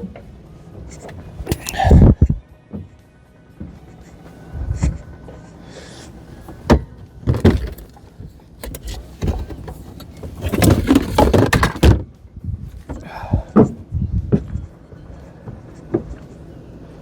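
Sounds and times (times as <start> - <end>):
tools clattering in truck bed: 1.0 - 2.0, 5.8 - 12.1, 12.7 - 13.8.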